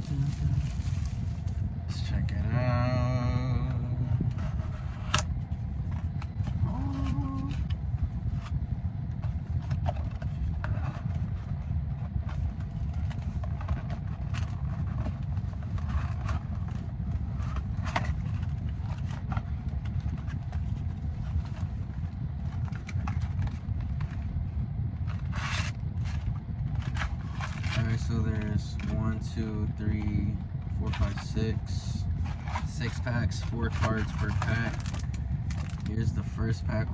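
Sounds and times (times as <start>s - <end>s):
steady low rumble: 0.0s - 36.9s
cards clicking and rustling: 33.6s - 36.0s.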